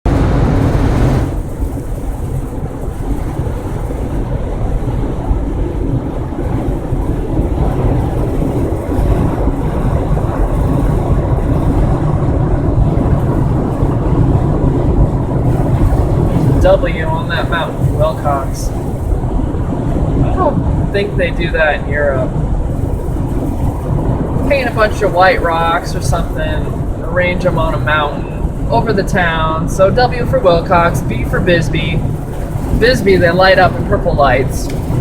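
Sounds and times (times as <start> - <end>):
tyre and road noise: 0.0 - 35.0.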